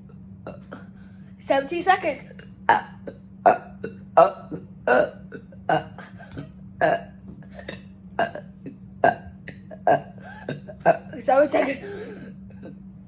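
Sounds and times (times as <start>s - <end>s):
person burping: 2.3s - 11.2s.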